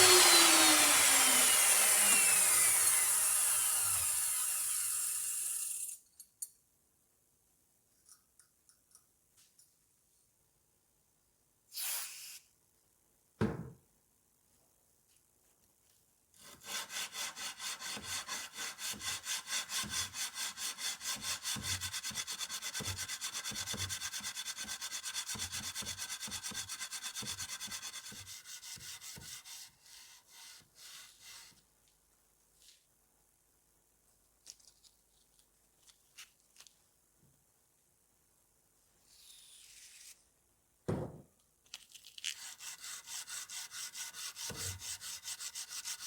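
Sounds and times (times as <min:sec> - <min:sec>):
single knock: 0:40.9 - 0:41.2.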